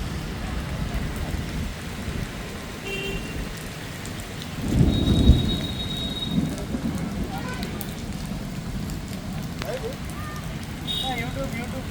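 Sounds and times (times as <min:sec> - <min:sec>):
heavy rain falling: 0:00.0 - 0:11.9
thunder rumble: 0:03.4 - 0:11.9.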